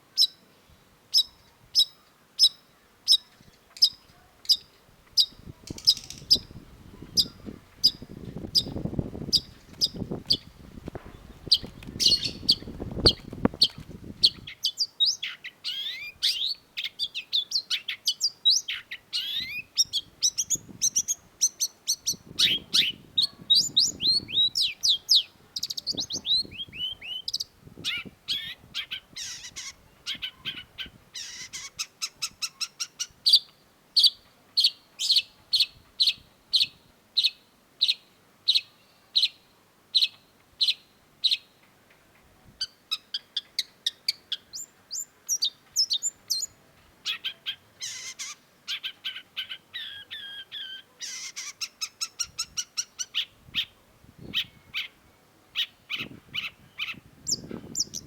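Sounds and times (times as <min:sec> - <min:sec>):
shrike singing: 0:03.8 - 0:14.8.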